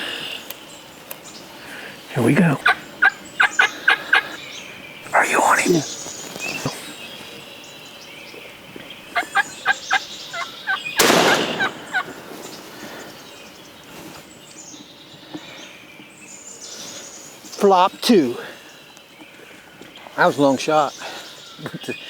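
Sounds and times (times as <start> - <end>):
turkey gobbling: 2.6 - 4.4, 9.1 - 12.8
shotgun blast: 11.0 - 12.6.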